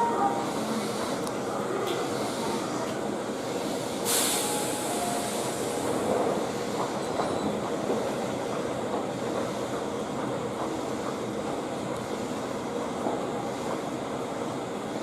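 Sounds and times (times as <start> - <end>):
electric train on rails: 0.0 - 15.0
short sharp hiss: 4.0 - 5.8.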